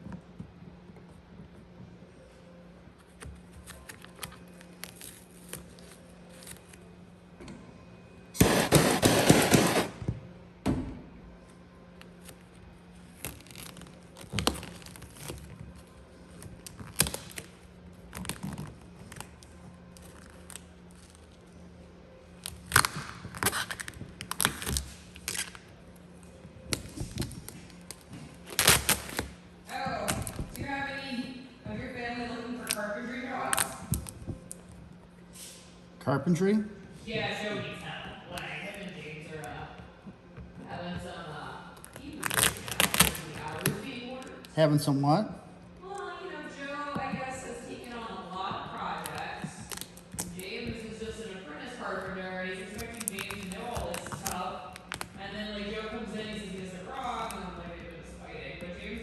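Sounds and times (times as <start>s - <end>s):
vinyl film crinkling and tapping: 3.0s - 6.8s, 12.0s - 21.5s, 41.8s - 44.4s, 48.4s - 55.2s
film ripping: 3.7s - 6.8s, 8.4s - 10.0s, 13.1s - 19.4s, 22.4s - 25.7s, 26.7s - 29.4s, 41.8s - 43.9s, 48.8s - 50.5s, 52.7s - 55.1s
short sharp rips and crackles: 41.8s - 43.8s.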